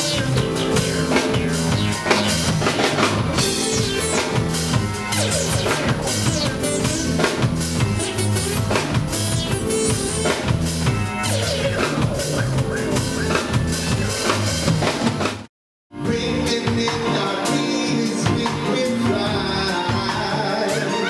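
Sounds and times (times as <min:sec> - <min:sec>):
live soul band music: 0:00.0 - 0:15.4, 0:16.0 - 0:21.0
drum kit: 0:00.0 - 0:21.0
person singing: 0:16.0 - 0:21.0.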